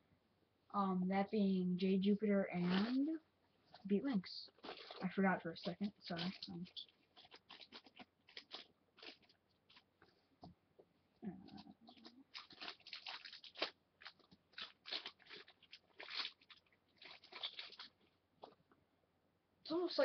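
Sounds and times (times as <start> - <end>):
plastic packaging crinkling: 2.5 - 3.9, 4.5 - 10.0, 11.6 - 18.6.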